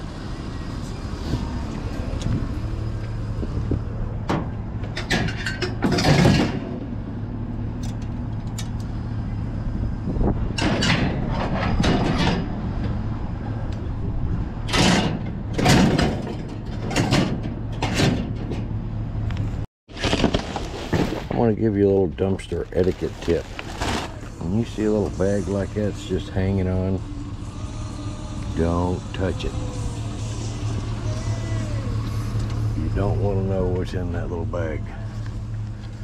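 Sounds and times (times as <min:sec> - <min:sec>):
trash bags rustling: 0:19.9 - 0:24.8.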